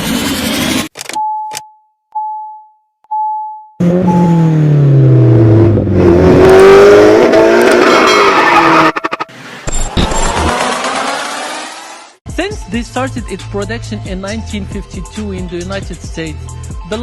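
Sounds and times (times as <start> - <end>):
short electronic beeps: 1.1 - 4.5
music: 12.2 - 17.0.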